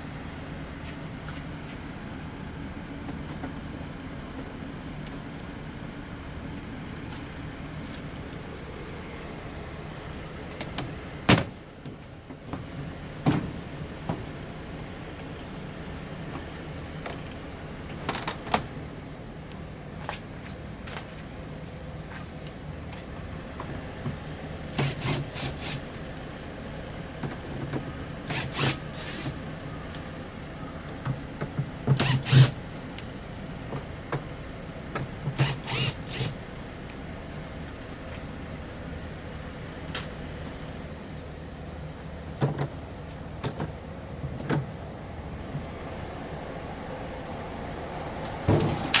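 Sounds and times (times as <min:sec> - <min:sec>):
knocks and clatter of machine parts: 0:41.9 - 0:44.8.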